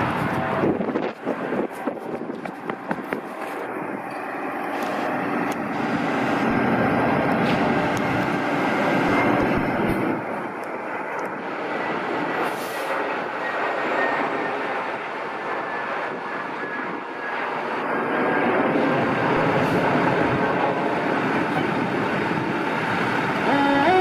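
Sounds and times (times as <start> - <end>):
fire truck diesel engine passing: 3.5 - 13.4.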